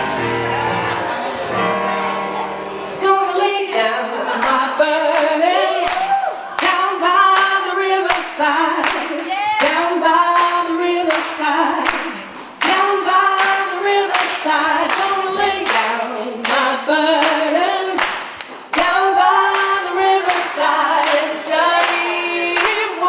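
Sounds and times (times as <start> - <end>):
choir singing a cappella: 0.0 - 23.0
hand claps: 5.2 - 22.9.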